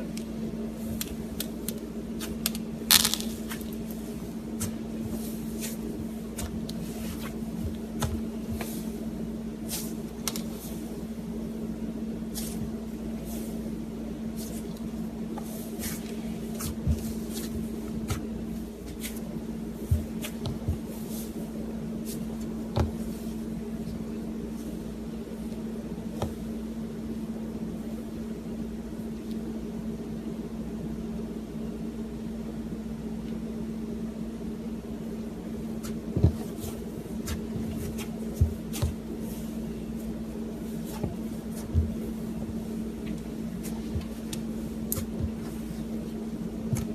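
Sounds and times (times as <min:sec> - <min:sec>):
background hum: 0:00.0 - 0:46.9
slime crackling and popping: 0:01.4 - 0:03.8.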